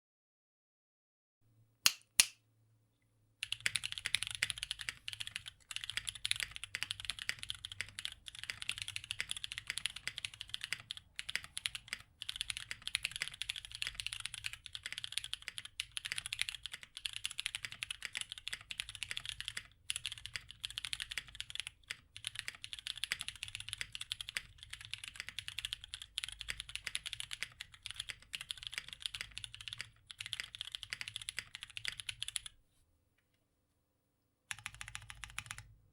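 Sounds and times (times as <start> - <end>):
sharp click: 1.9 - 2.4
fast mechanical keyboard typing: 3.4 - 32.6, 34.5 - 35.7.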